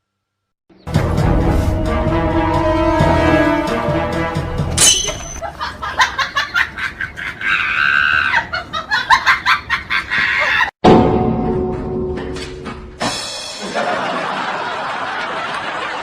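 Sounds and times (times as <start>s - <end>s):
music: 0.7s - 5.2s, 10.8s - 14.7s
bursts of laughter: 5.4s - 10.7s, 13.6s - 16.0s.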